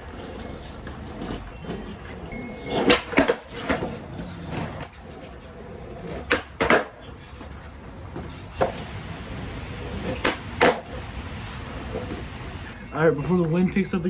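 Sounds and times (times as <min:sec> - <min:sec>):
skateboard landing: 0:00.0 - 0:12.6
skateboard tail snapping: 0:02.8 - 0:08.9, 0:09.8 - 0:11.0.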